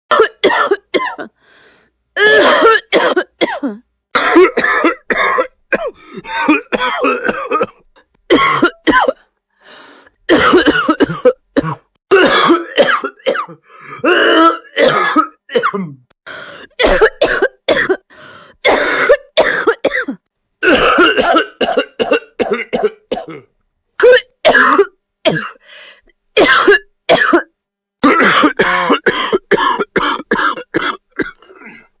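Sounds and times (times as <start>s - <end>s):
person coughing: 0.1s - 1.4s, 2.2s - 9.2s, 10.3s - 25.6s, 26.4s - 31.9s
throat clearing: 10.4s - 16.1s, 30.8s - 31.9s.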